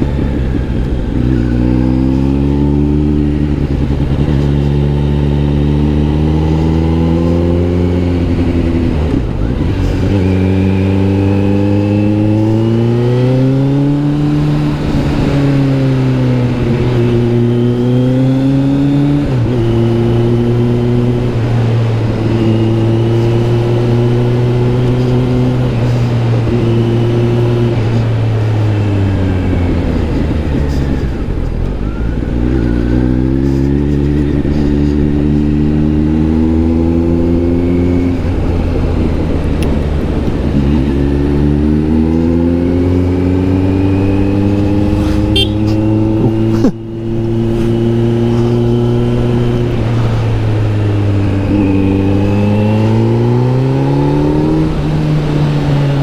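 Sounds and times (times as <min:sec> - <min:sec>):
motorcycle engine: 0:00.0 - 0:56.0.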